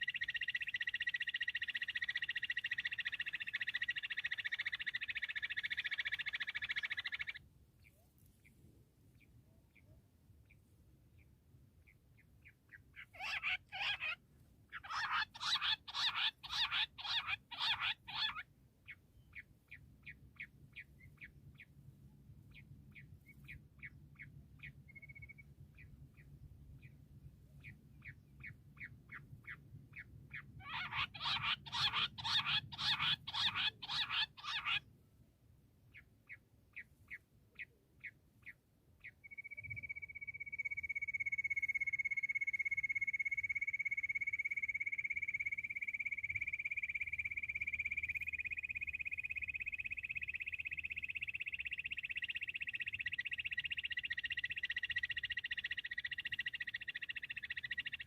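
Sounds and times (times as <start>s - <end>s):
fast chattering calls: 0.0s - 7.4s, 13.0s - 18.4s, 30.6s - 34.8s
quail calling: 0.0s - 7.4s, 13.0s - 18.4s, 30.3s - 34.8s.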